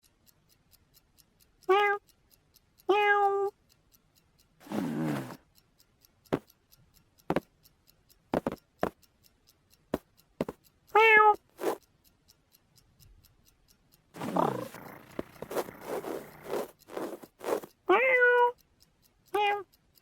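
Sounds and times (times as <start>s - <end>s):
cat meowing: 1.7s - 2.0s, 2.9s - 3.5s, 11.0s - 11.4s, 17.9s - 18.6s, 19.4s - 19.6s
short knocks and taps: 8.4s - 9.0s.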